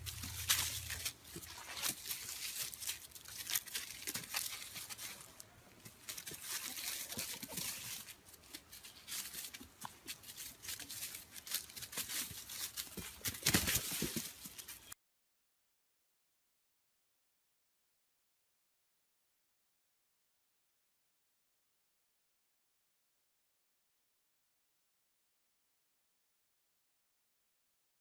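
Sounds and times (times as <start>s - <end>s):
crinkling and rustling: 0.0s - 15.0s.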